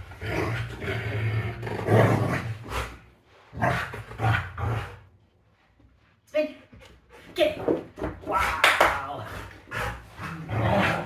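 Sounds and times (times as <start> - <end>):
dog growling: 0.0 - 3.0, 8.3 - 11.0.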